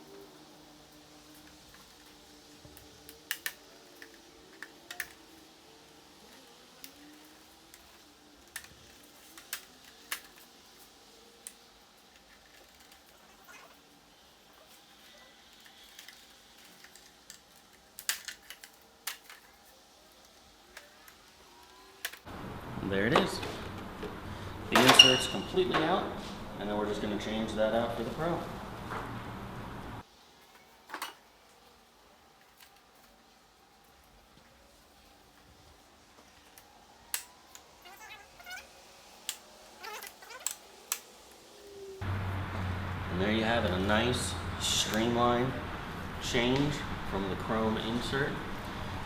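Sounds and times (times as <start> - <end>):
plastic clips clicking and snapping: 1.3 - 5.4, 6.3 - 10.6, 15.5 - 19.6, 39.2 - 41.1
plastic parts squeaking: 1.3 - 5.5, 6.1 - 22.3, 37.2 - 41.8
plastic clips snapping: 2.7 - 5.2, 15.5 - 19.5, 36.5 - 37.7.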